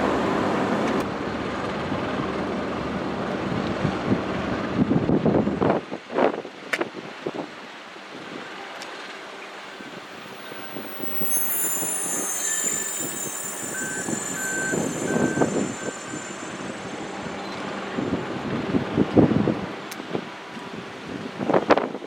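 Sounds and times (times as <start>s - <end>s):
train wheels squealing: 9.7s - 18.7s
short electronic beeps: 9.8s - 17.8s.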